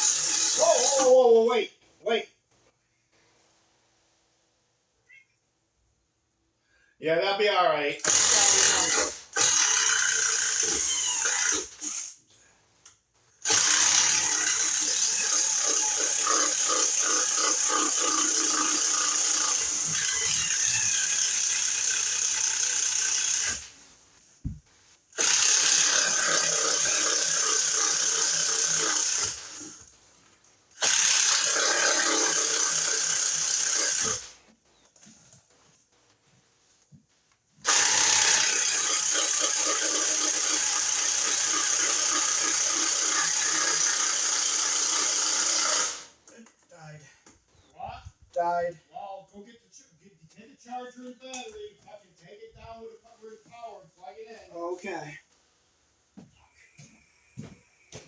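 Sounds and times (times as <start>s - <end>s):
cordless power tool running: 8.0s - 12.1s, 13.4s - 23.7s, 25.2s - 29.9s, 30.8s - 34.4s, 37.6s - 46.1s.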